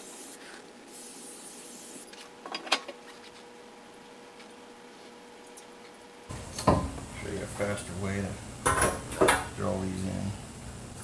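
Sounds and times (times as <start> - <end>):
faint steady hum: 3.4 - 11.0.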